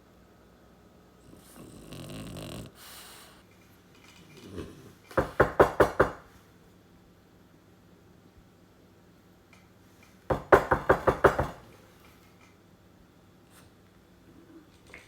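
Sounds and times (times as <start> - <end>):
dog snorting and huffing: 1.4 - 3.2.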